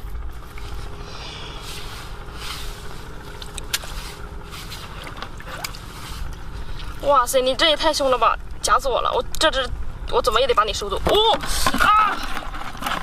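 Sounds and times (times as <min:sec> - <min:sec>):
rustling noise: 0:01.6 - 0:06.7.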